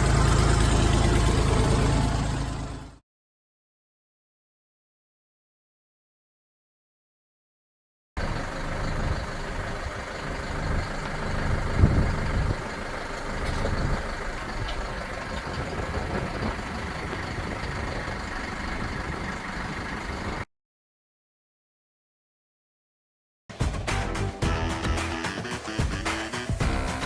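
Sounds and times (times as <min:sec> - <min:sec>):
tractor diesel engine running: 0:00.0 - 0:03.0, 0:08.2 - 0:20.5, 0:26.6 - 0:27.0.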